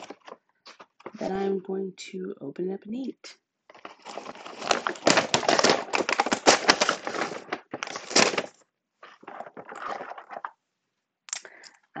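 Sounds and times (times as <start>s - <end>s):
food packaging crinkling: 0.0s - 1.2s, 3.7s - 10.6s.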